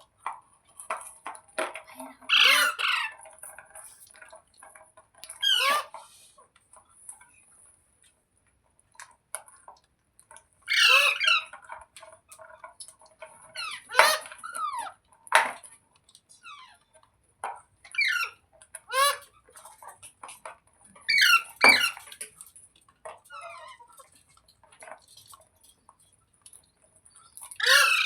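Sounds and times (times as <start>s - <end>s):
parrot screeching: 2.3s - 3.2s, 5.4s - 5.9s, 10.7s - 11.5s, 13.6s - 14.9s, 17.9s - 19.3s, 21.1s - 22.0s, 27.6s - 28.0s.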